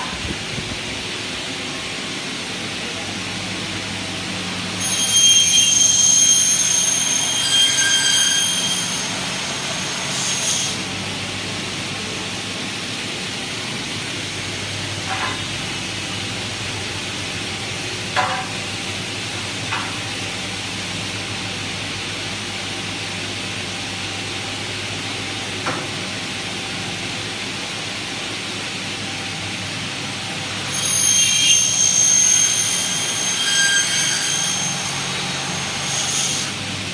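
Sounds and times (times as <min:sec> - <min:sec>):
cutting saw high ringing whine: 0:04.1 - 0:18.5, 0:30.4 - 0:36.9.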